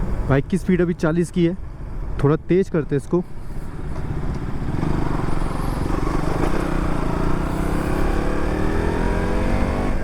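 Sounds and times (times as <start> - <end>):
motorcycle engine accelerating: 3.6 - 10.0.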